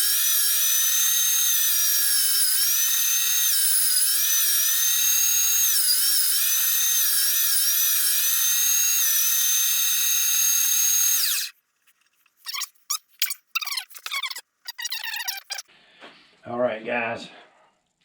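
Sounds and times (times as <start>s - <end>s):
meat grinder motor whining: 0.0s - 11.5s, 13.6s - 15.6s.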